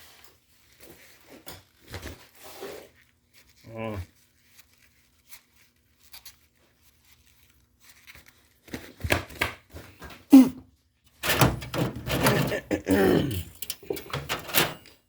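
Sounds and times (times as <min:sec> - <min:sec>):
objects knocking and clattering: 0:11.2 - 0:15.0.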